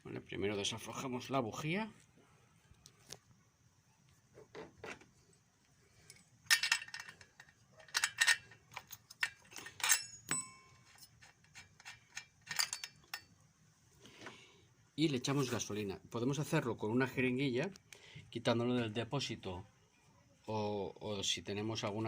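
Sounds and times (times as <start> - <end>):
wrench clinking on spark plug: 6.2 - 13.3
short metallic ring: 9.8 - 11.1.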